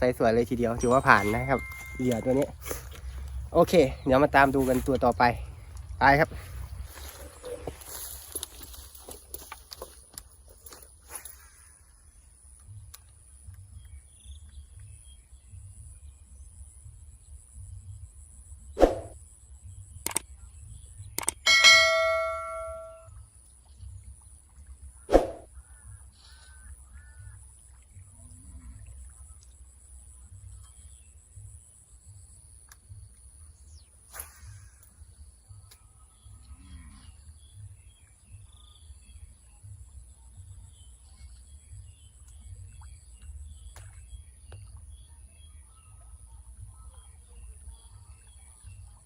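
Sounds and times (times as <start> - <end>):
bird chirps: 0.4 - 3.2, 21.2 - 23.0
steady high-pitched tone: 0.5 - 2.6, 21.5 - 23.0
sharp ringing ding: 0.8 - 2.5, 21.5 - 23.1
sharp clicks: 20.0 - 20.3, 21.2 - 21.4.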